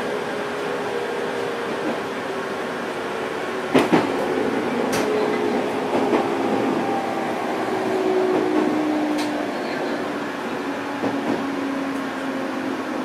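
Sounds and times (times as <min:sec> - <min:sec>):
electric train hum: 0:00.0 - 0:13.0.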